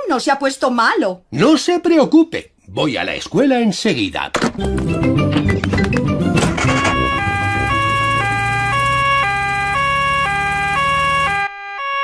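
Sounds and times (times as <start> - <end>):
two-tone cartoon siren: 6.5 - 12.0.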